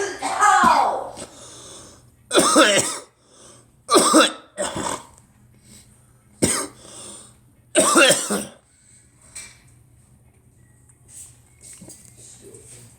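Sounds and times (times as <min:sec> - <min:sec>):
person coughing: 0:00.0 - 0:01.5, 0:02.3 - 0:03.1, 0:03.9 - 0:05.1, 0:06.4 - 0:06.8, 0:07.8 - 0:08.6.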